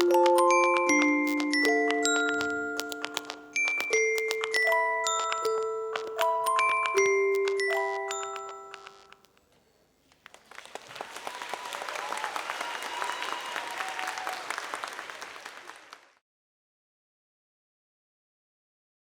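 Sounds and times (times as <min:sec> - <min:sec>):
bell-like music notes: 0:00.0 - 0:09.2
audience applauding: 0:10.1 - 0:16.2.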